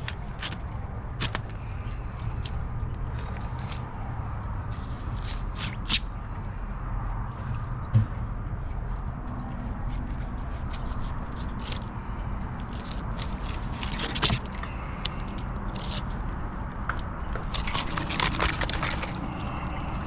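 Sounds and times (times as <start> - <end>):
steady low rumble: 0.0 - 13.8
scraping and sharp clicking: 17.0 - 19.6.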